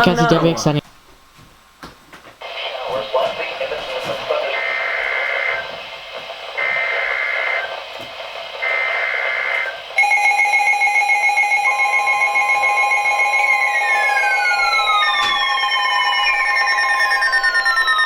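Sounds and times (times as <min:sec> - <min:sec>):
steady attention tone: 0:00.0 - 0:00.9, 0:08.6 - 0:18.0
buzzy data tone bursts: 0:08.6 - 0:18.0
higher tone: 0:10.0 - 0:18.0.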